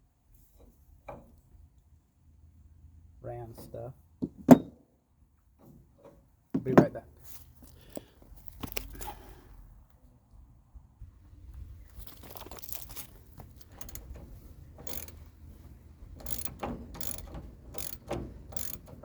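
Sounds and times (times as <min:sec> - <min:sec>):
ratchet wrench clicking: 0:13.5 - 0:14.2, 0:14.8 - 0:15.3, 0:16.1 - 0:19.0.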